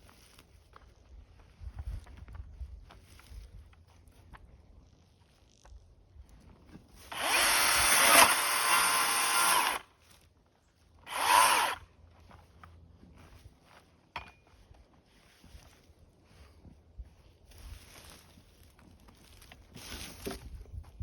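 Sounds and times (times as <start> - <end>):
chainsaw bursts: 7.1 - 9.9, 11.1 - 11.8.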